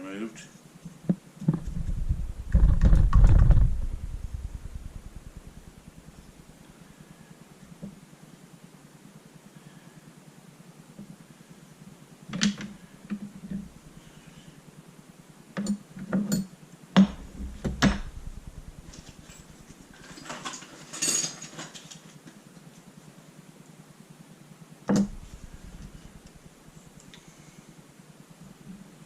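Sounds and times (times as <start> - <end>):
short rattle: 1.6 - 6.4, 17.1 - 21.7
metal parts and tools clinking: 18.9 - 21.9.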